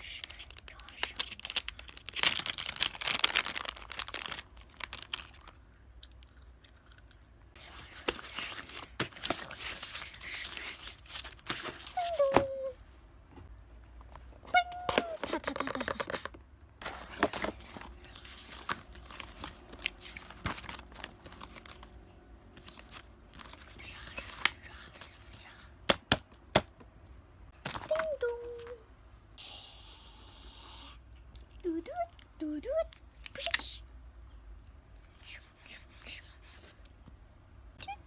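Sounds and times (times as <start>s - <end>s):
paper crinkling and rustling: 0.2s - 5.6s, 7.6s - 12.7s, 14.9s - 25.3s.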